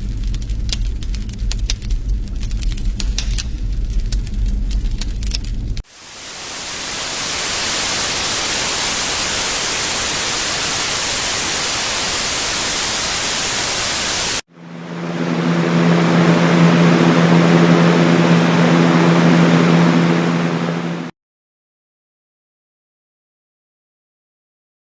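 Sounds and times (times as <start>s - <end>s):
white noise machine hiss: 5.8s - 14.5s.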